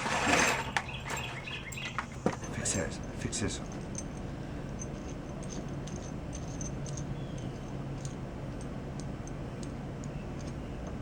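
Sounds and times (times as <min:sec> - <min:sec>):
low background hum: 0:00.0 - 0:11.0
small metal tools clicking: 0:03.6 - 0:11.0.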